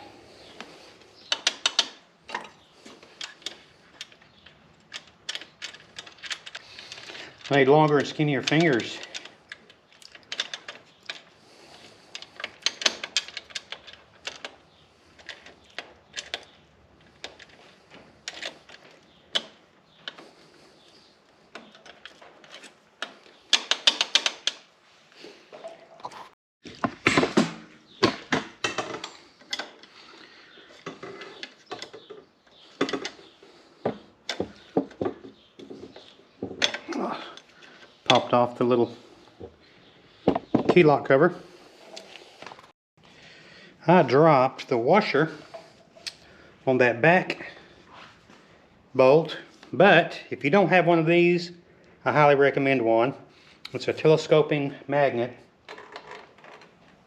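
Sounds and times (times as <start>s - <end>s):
hand tools clicking and tapping: 0.6s - 11.3s, 21.5s - 24.7s.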